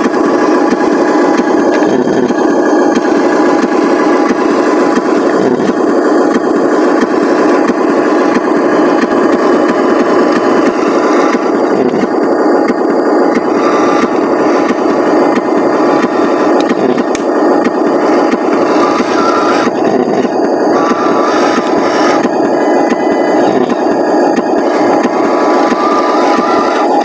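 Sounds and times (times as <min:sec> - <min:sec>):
faint motor whine: 0:00.0 - 0:27.0
tyres grinding on dirt: 0:06.4 - 0:27.0.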